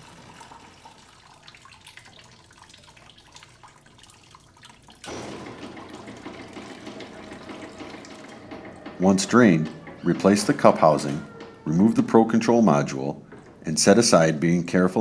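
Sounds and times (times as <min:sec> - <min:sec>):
water drips: 0:00.0 - 0:05.1
water draining into a bucket: 0:00.0 - 0:11.4.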